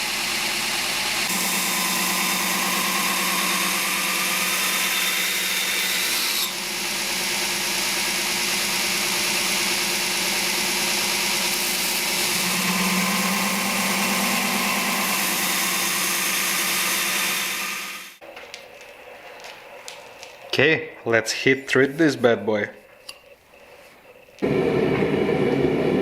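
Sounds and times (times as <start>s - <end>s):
electric grinder grinding metal: 1.2s - 18.2s.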